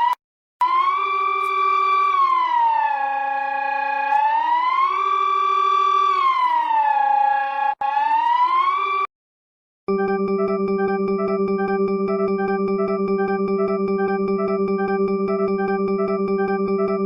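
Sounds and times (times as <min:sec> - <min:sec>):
electronic siren-like alert tone: 0:09.9 - 0:17.0.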